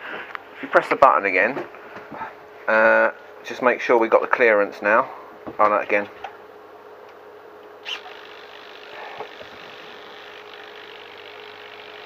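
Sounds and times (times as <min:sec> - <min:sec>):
small servo whirring: 0:07.8 - 0:12.0.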